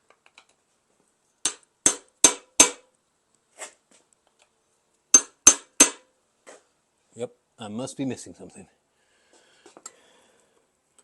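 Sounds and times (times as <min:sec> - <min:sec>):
hammer striking steel chisel: 0:01.4 - 0:02.9, 0:05.2 - 0:06.0.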